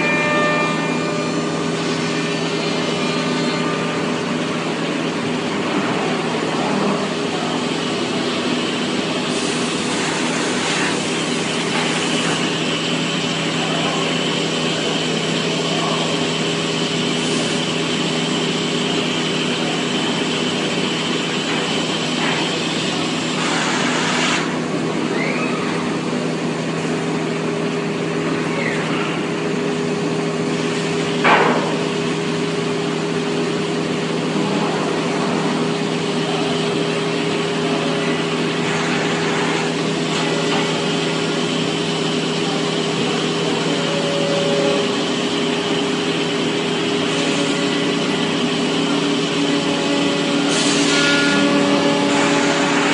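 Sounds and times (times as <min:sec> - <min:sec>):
thin whine: 0:00.0 - 0:05.4
machining centre humming: 0:00.0 - 0:52.9.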